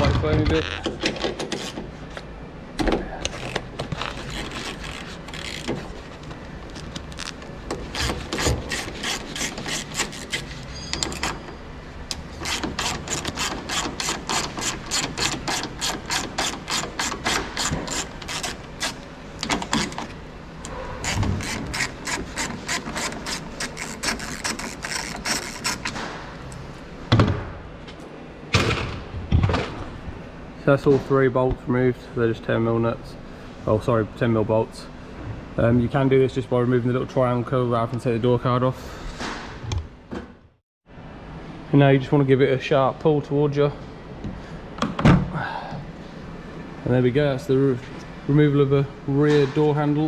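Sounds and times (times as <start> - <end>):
ratchet clicking: 8.0 - 11.4, 12.4 - 20.1, 21.0 - 26.0.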